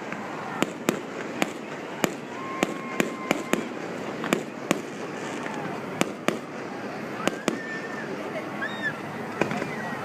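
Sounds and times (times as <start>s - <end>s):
firework whistle: 0.0s - 10.0s
fireworks bangs: 0.0s - 10.0s.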